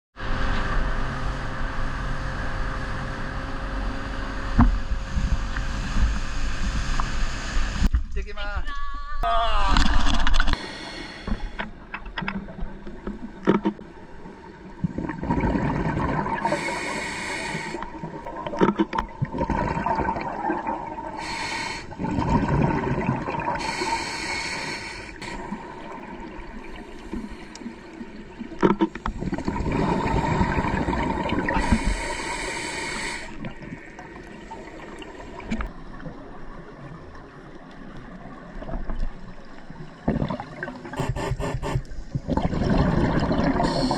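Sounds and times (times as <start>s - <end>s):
diver breathing through regulator: 10.5s - 11.8s, 16.3s - 18.0s, 21.1s - 22.1s, 23.5s - 25.8s, 29.1s - 33.5s, 40.9s - 42.0s, 43.4s - 43.9s
gurgling exhaled bubbles: 14.5s - 32.5s, 33.2s - 43.9s.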